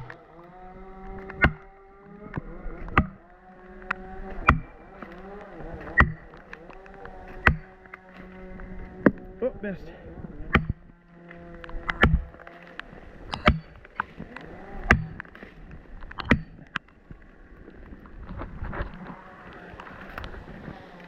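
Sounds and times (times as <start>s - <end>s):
tool striking a wedge: 1.4s - 1.6s, 2.9s - 3.2s, 4.4s - 4.7s, 6.0s - 6.2s, 7.4s - 7.7s, 10.5s - 10.8s, 11.9s - 12.3s, 13.3s - 13.7s.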